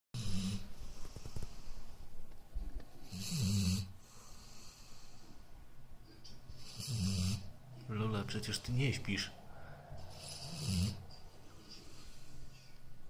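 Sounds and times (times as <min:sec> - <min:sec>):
dog snoring: 0:00.2 - 0:01.6, 0:03.0 - 0:05.2, 0:06.5 - 0:07.5, 0:09.9 - 0:12.3.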